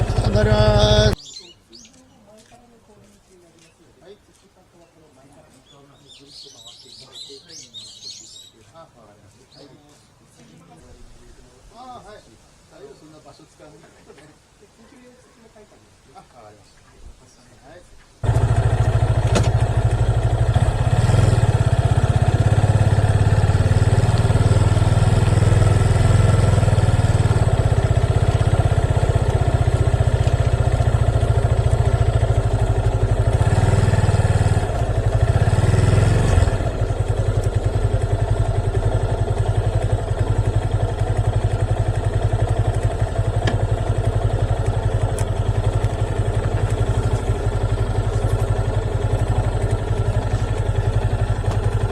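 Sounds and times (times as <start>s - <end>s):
motorcycle engine running: 0.0s - 1.2s, 18.2s - 51.9s.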